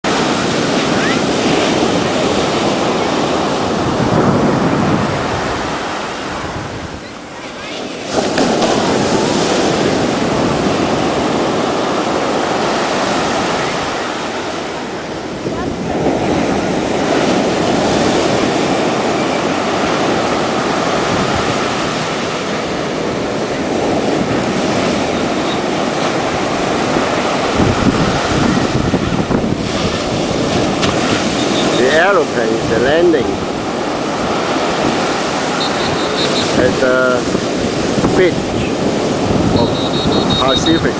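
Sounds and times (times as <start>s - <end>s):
surf breaking: 0.0s - 40.9s
wind buffeting microphone: 0.0s - 40.9s
airliner cabin roar: 39.5s - 40.9s.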